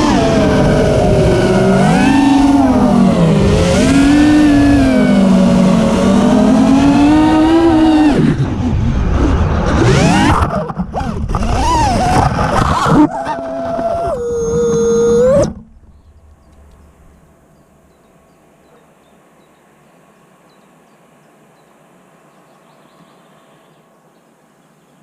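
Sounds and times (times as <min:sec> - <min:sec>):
quadcopter motors whining: 0:00.0 - 0:17.0.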